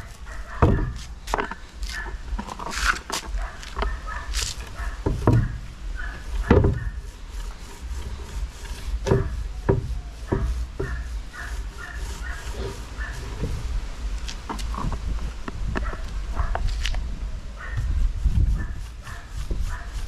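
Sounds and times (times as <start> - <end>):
brush rubbing on wood: 0.0 - 20.0
sharp knocks against wood: 0.6 - 2.0, 5.0 - 5.6, 6.4 - 6.9, 9.0 - 11.1.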